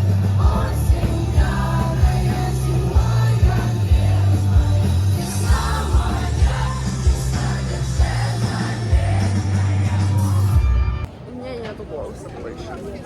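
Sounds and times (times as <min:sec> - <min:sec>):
person singing: 0:00.0 - 0:10.6
live pop-rock band: 0:00.0 - 0:11.1.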